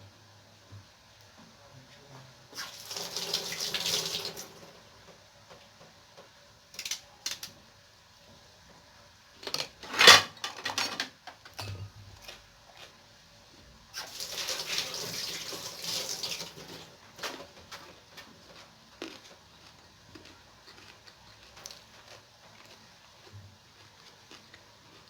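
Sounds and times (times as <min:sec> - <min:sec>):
tap water running: 0:02.6 - 0:05.2, 0:14.0 - 0:17.4
clicks of kitchen things: 0:09.4 - 0:12.0.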